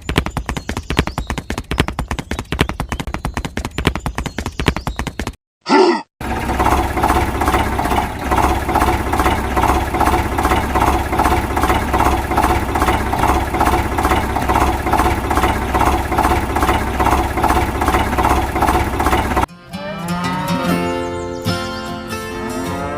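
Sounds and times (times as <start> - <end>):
engine idling: 6.2 - 19.5.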